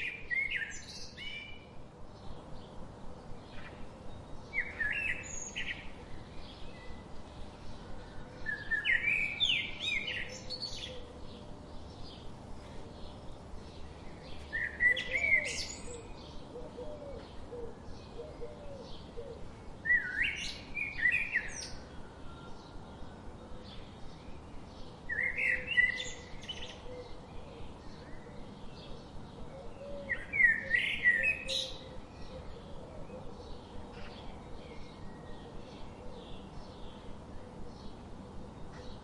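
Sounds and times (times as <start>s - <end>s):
songbird singing: 0.0s - 39.0s.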